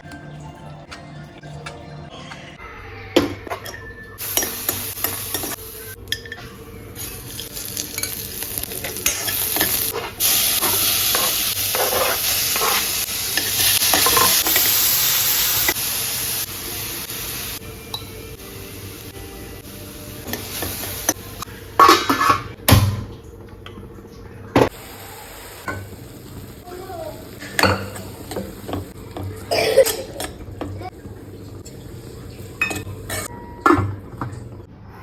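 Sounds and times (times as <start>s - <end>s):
food sizzling in a pan: 4.2s - 22.5s, 24.7s - 33.3s.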